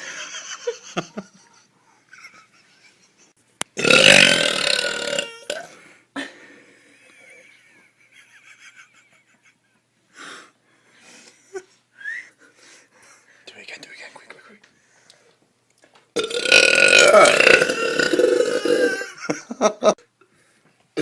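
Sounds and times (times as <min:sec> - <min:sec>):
woman burping: 0:03.8 - 0:06.3, 0:16.2 - 0:19.1.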